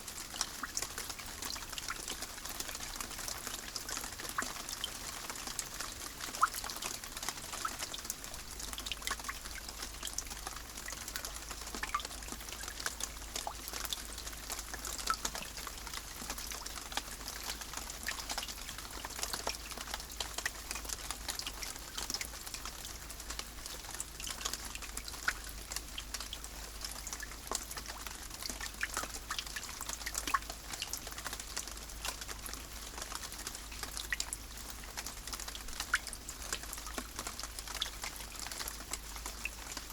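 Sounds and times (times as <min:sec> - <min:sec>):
raindrops ticking: 0:00.0 - 0:39.9
steady rain: 0:00.0 - 0:39.9.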